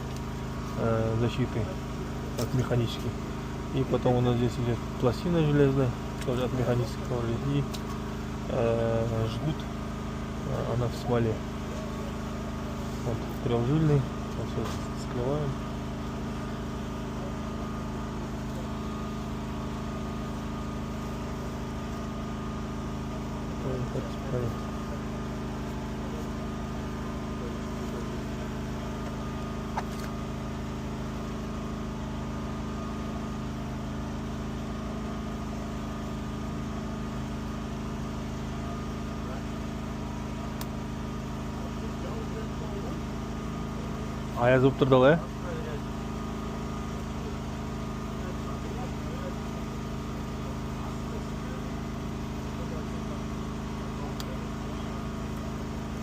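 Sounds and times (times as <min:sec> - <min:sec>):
engine idling: 0:00.0 - 0:56.0.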